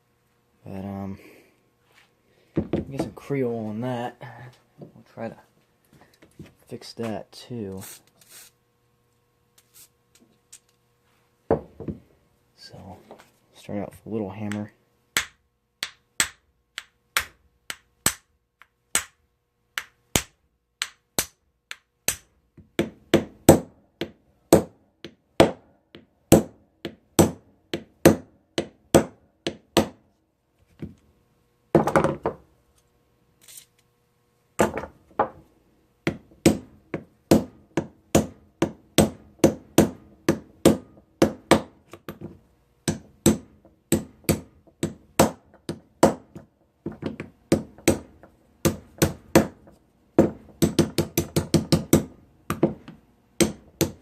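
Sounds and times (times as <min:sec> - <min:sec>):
small hammer striking metal: 0:15.2 - 0:18.3.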